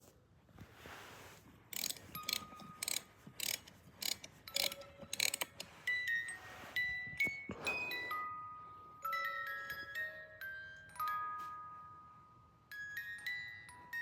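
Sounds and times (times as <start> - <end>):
mechanical clicking and rattling: 1.7 - 5.7
ringing chime-like notes: 5.7 - 14.0.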